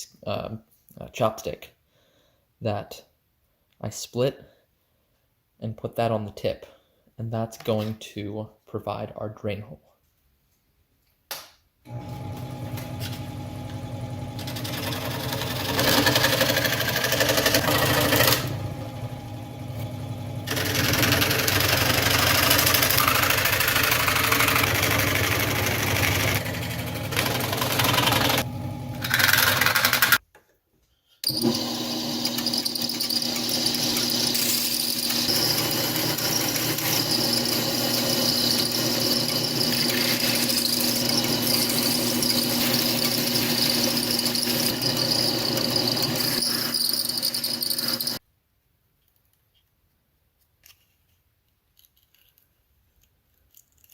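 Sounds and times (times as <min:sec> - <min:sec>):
power tool motor running: 0:11.9 - 0:30.2, 0:31.2 - 0:48.2
machine humming with high whine: 0:17.6 - 0:23.5, 0:24.2 - 0:29.2.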